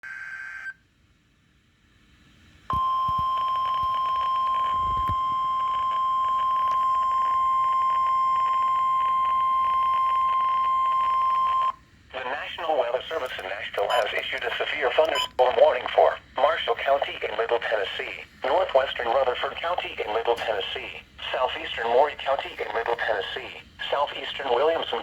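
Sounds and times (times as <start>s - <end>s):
faint radio static: 2.7s - 25.0s
steady alert beep: 13.8s - 14.2s, 15.1s - 15.4s.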